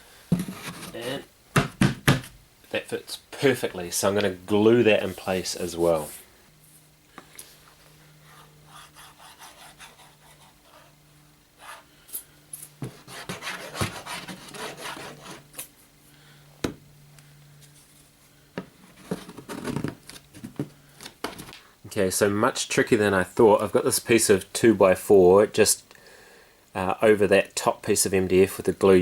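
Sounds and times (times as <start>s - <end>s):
steady low hum: 0.0s - 29.0s
parts rubbing and scraping: 0.3s - 1.2s
sharp knocks of wood: 1.6s - 2.3s.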